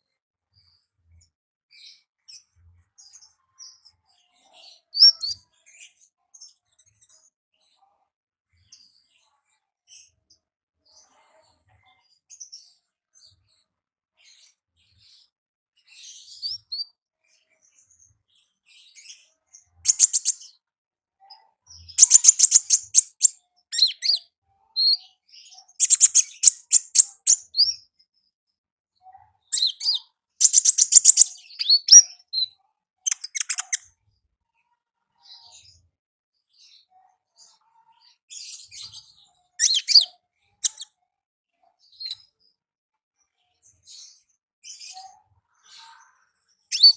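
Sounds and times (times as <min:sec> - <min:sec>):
songbird chattering trills: 0:19.9 - 0:20.4, 0:22.0 - 0:24.2, 0:25.8 - 0:27.8, 0:29.6 - 0:32.0, 0:33.1 - 0:33.8.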